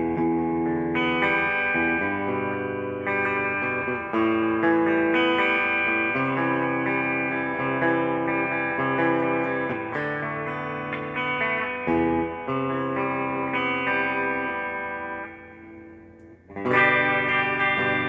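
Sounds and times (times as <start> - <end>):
electric guitar chords clean tone: 0.0 - 18.0.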